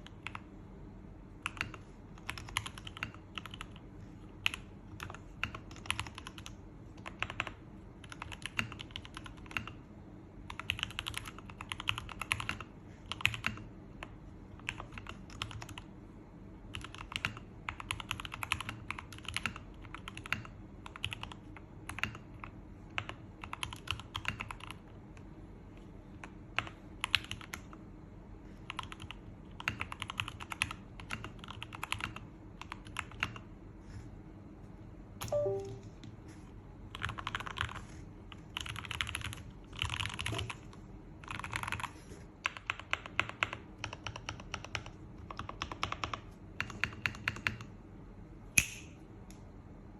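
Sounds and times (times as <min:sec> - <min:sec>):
mechanical keyboard clacks: 0:01.4 - 0:03.8, 0:04.4 - 0:09.8, 0:10.5 - 0:13.6, 0:16.7 - 0:24.8, 0:28.7 - 0:33.4, 0:36.9 - 0:37.8, 0:38.6 - 0:40.6, 0:41.2 - 0:47.7.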